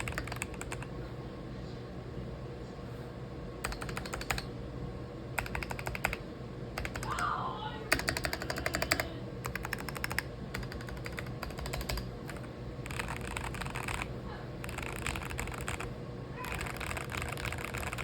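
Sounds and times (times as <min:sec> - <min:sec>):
mechanical keyboard typing: 0:00.0 - 0:00.9, 0:03.6 - 0:04.5, 0:05.4 - 0:06.2, 0:06.8 - 0:07.2, 0:07.9 - 0:18.0.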